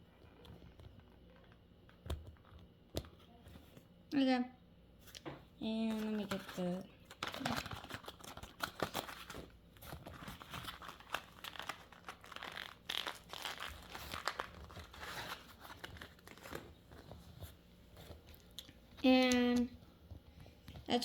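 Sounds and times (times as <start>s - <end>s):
packaging crinkling and rustling: 5.8s - 18.7s.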